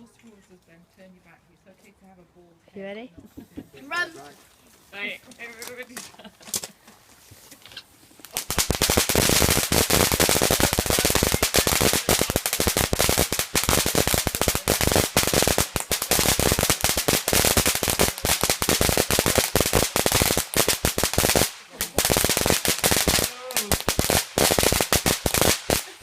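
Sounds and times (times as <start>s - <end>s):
firework crackling bangs: 8.2s - 26.0s.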